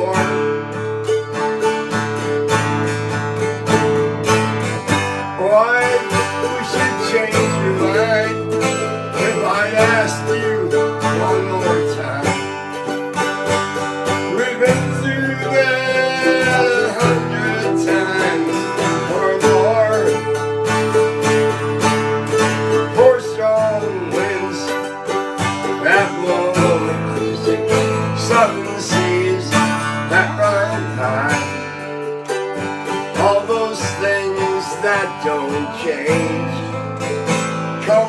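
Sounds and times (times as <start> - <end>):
acoustic string band playing: 0.0 - 38.0
picked guitar: 0.0 - 38.0.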